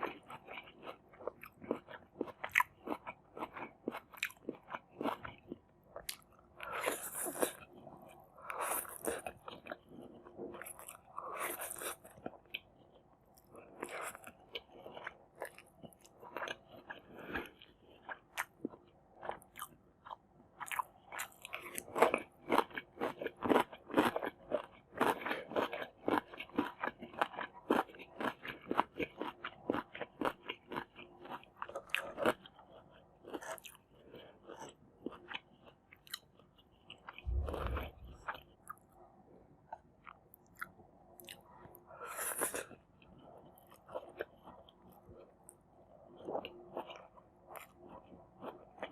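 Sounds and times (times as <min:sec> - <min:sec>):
chewing and crunching food: 0:00.0 - 0:48.9
low thud: 0:37.3 - 0:38.3.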